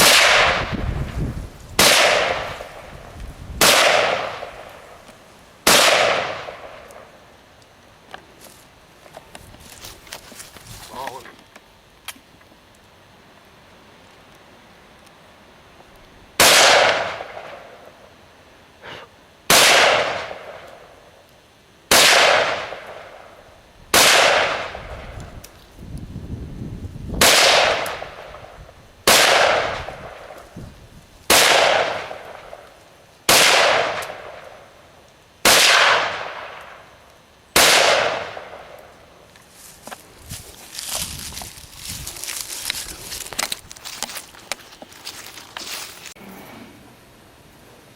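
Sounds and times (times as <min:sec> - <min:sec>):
rifle shots echoing: 0:00.0 - 0:00.7, 0:01.8 - 0:02.9, 0:03.6 - 0:05.0, 0:05.6 - 0:07.2, 0:16.4 - 0:17.8, 0:19.5 - 0:20.7, 0:21.9 - 0:24.8, 0:27.2 - 0:30.3, 0:31.3 - 0:32.6, 0:33.3 - 0:34.7, 0:35.4 - 0:36.9, 0:37.6 - 0:39.0.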